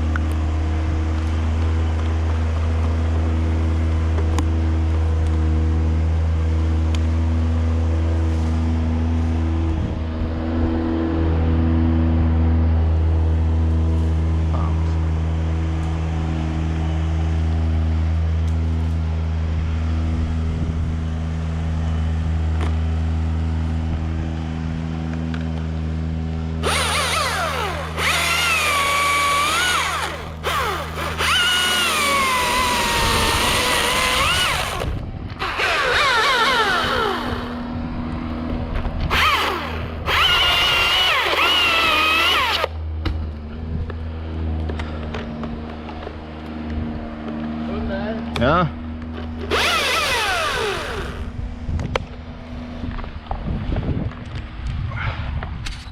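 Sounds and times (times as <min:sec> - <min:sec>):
low engine hum: 0:00.0 - 0:55.9
chainsaw cutting: 0:26.5 - 0:37.8, 0:39.0 - 0:42.8, 0:49.2 - 0:51.4.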